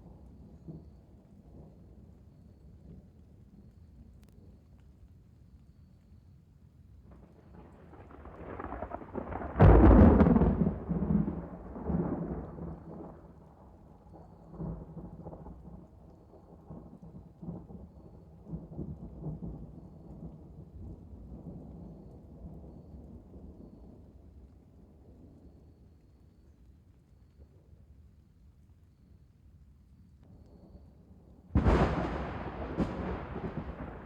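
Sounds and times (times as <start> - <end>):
thunder crack and rumble: 7.1 - 24.2, 31.5 - 34.0.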